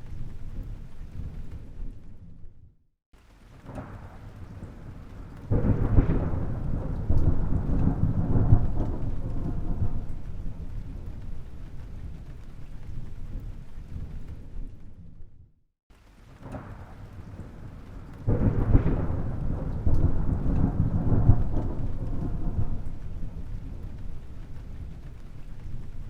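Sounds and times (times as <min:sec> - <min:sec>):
thunder rumbling: 0:00.0 - 0:02.7, 0:03.5 - 0:15.5, 0:16.2 - 0:26.0
loud thunder peal: 0:03.7 - 0:12.4, 0:16.4 - 0:26.0.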